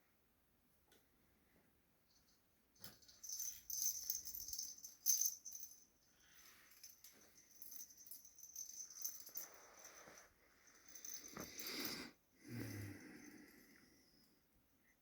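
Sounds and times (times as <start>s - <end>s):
bird toy rattling and jingling: 2.9s - 10.1s.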